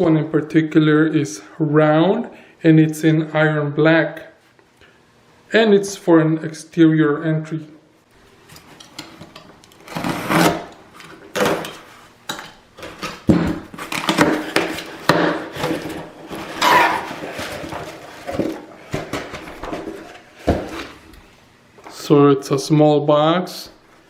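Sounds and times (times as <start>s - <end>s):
box rustling and scraping: 9.8s - 12.1s, 12.8s - 21.0s.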